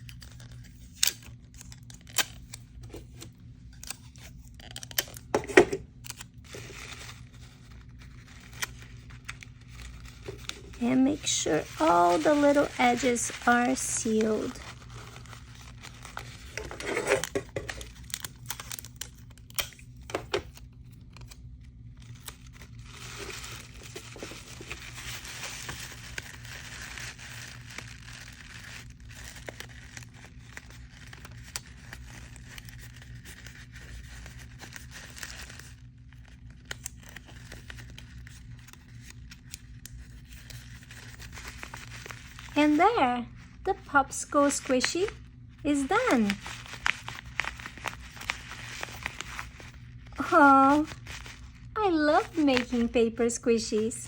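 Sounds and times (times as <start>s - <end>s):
sticky tape pulled and torn: 0.0s - 2.6s
paper crinkling and rustling: 0.0s - 54.0s
steady low hum: 0.0s - 54.0s.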